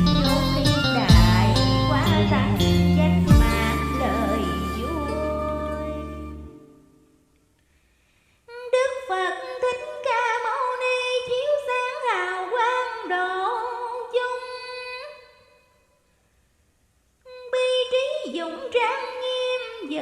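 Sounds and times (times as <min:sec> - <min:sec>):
woman singing with vibrato: 0:00.0 - 0:06.6, 0:08.5 - 0:15.6.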